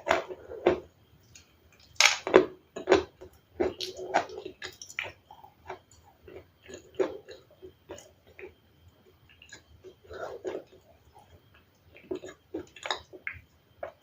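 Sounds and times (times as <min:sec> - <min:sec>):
person chewing ice: 0:03.6 - 0:08.5, 0:12.0 - 0:13.2.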